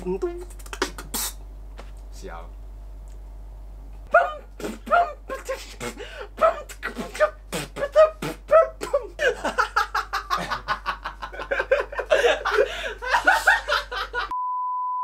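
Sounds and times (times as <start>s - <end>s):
people laughing: 8.8s - 14.3s.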